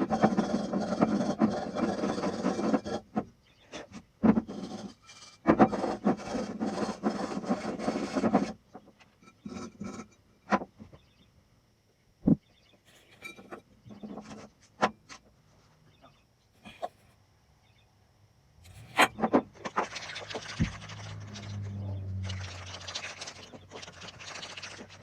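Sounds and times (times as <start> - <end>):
scraping on metal pulley: 0.0 - 3.1, 18.6 - 25.0.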